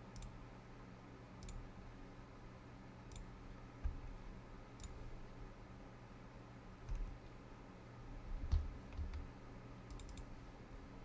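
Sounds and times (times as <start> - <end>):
faint low hum: 0.0 - 11.0
computer mouse clicks: 0.1 - 0.4, 1.4 - 1.6, 3.1 - 4.1, 4.8 - 5.0, 6.8 - 7.2, 9.9 - 10.3
soft low thump: 8.4 - 9.2.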